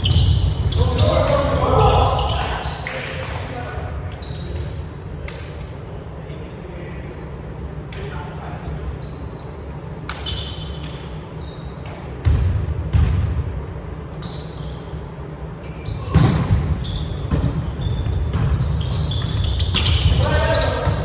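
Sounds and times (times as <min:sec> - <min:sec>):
shoe squeaks: 0:00.0 - 0:03.0, 0:04.1 - 0:05.3, 0:07.0 - 0:07.7, 0:08.9 - 0:11.9, 0:14.2 - 0:16.2, 0:16.8 - 0:21.0.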